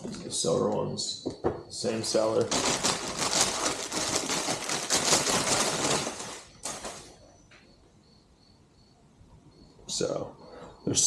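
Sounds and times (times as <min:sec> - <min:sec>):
parts clicking and rustling: 0:02.1 - 0:07.7.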